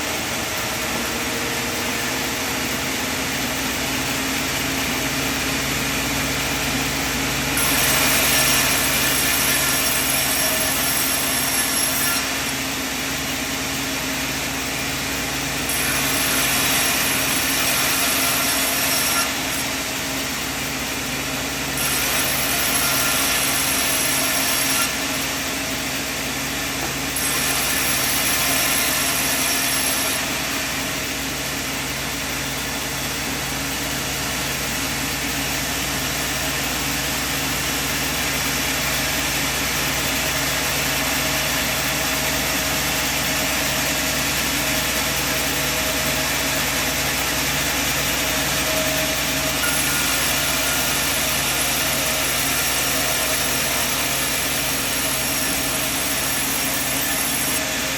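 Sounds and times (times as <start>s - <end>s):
sawmill machine humming: 0.0s - 57.9s.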